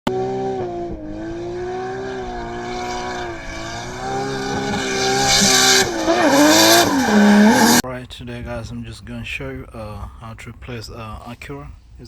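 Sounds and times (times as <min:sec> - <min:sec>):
car engine revving high: 0:00.1 - 0:07.8.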